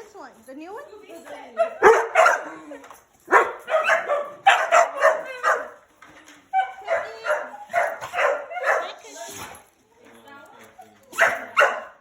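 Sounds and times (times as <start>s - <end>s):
dogs barking: 1.6s - 2.7s, 3.3s - 5.8s, 6.6s - 9.0s, 11.2s - 12.0s.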